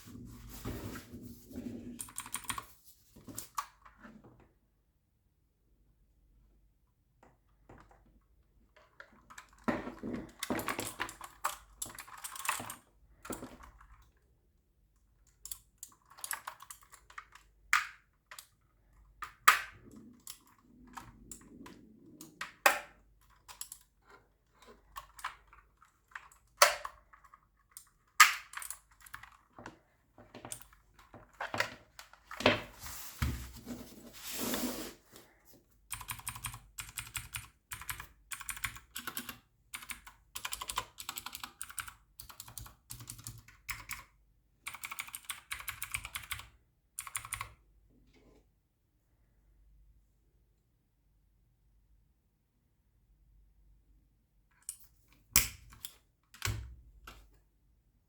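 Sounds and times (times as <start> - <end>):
keyboard clicks and knocks: 35.9 - 44.1.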